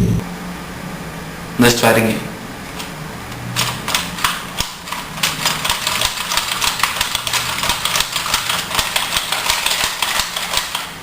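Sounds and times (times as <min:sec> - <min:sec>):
toy blaster plastic clicking: 0:03.6 - 0:10.9.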